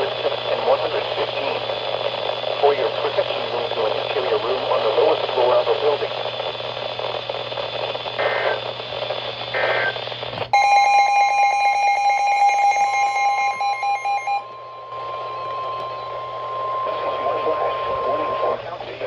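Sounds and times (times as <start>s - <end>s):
steady warning alert tone: 10.5s - 18.5s
loud electronic alarm: 10.5s - 18.6s.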